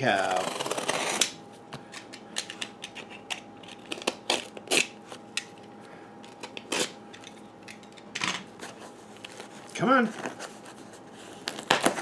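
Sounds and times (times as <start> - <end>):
cardboard package crackling and rustling: 8.6 - 12.0.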